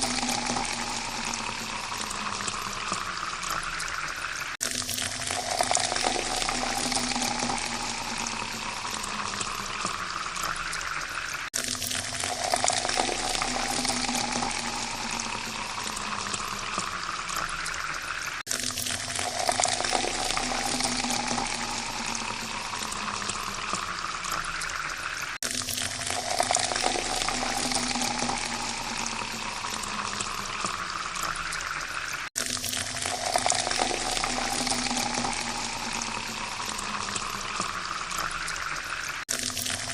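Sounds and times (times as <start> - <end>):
water pouring into a glass: 0.0 - 39.9.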